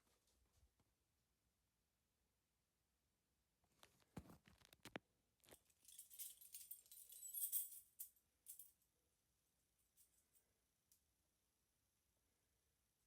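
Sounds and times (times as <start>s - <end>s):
soft jingling rattle: 5.7s - 8.8s.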